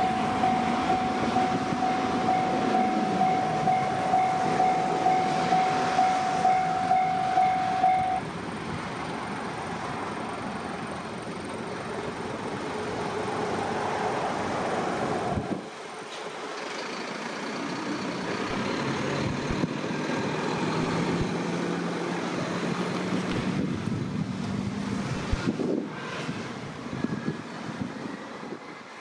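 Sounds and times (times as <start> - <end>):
heavy vehicle passing: 16.2 - 28.6.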